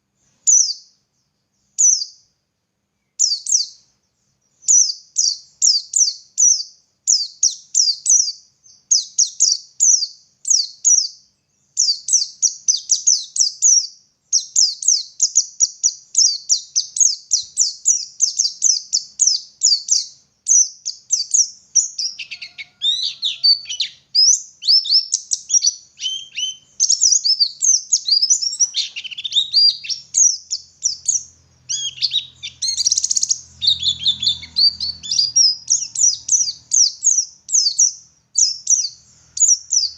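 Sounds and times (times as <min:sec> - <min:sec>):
bird singing high thin notes: 0:14.4 - 0:39.9.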